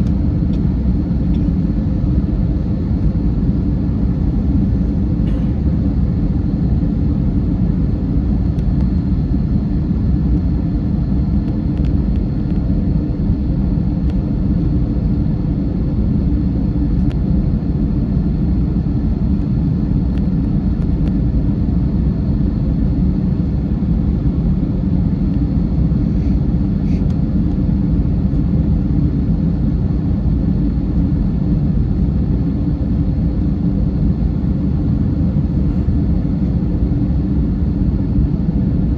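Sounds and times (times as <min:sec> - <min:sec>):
jet engines rumbling: 0:00.0 - 0:38.9
rushing air in cabin: 0:15.8 - 0:38.9.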